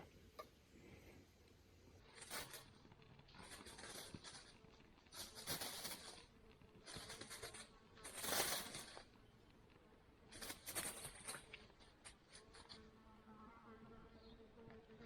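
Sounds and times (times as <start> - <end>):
rustling and crinkling handling noise: 2.0 - 12.8.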